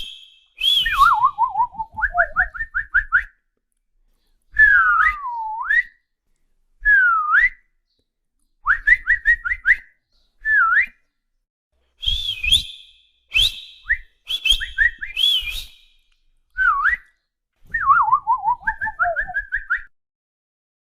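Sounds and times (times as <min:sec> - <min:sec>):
person whistling: 0:00.0 - 0:03.3, 0:04.6 - 0:06.0, 0:06.8 - 0:07.6, 0:08.6 - 0:11.0, 0:12.0 - 0:16.0, 0:16.6 - 0:17.1, 0:17.7 - 0:19.9.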